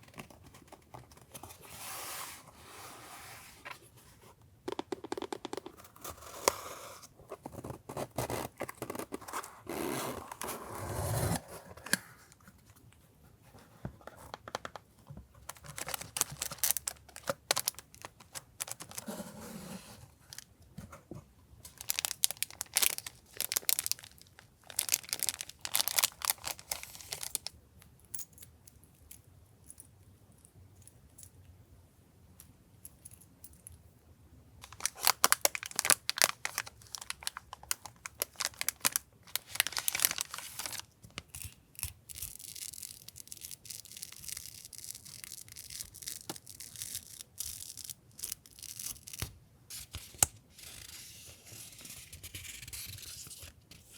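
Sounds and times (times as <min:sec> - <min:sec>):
packaging crinkling and tearing: 0:15.4 - 0:19.2, 0:21.7 - 0:27.5, 0:34.6 - 0:51.0.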